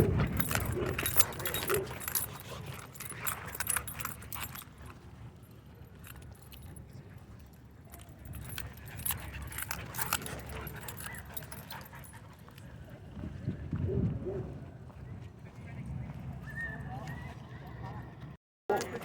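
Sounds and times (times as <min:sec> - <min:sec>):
light metallic jingling: 0:00.0 - 0:13.0
steady low rumble: 0:00.0 - 0:16.4.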